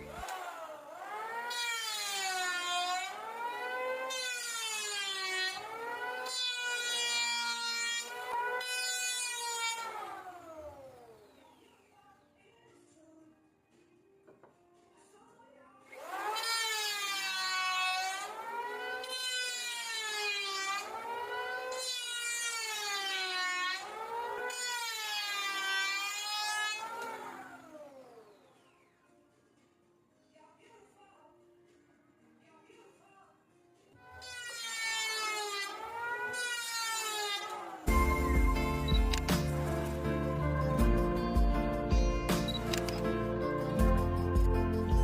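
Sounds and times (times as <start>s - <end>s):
electric hand planer whining: 0.0s - 11.6s, 15.9s - 28.8s, 34.0s - 41.4s.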